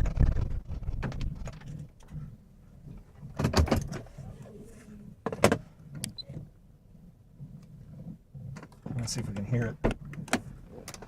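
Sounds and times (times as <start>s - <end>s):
knocks and rattles inside a car: 0.0s - 2.2s, 2.8s - 4.2s, 5.2s - 6.6s, 7.4s - 11.0s.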